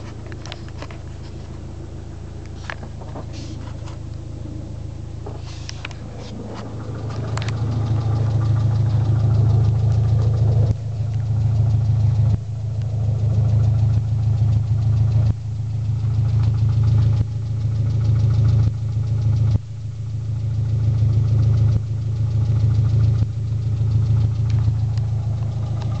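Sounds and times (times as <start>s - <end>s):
car engine running: 0.0s - 26.0s
engine ticking and knocking: 0.0s - 26.0s.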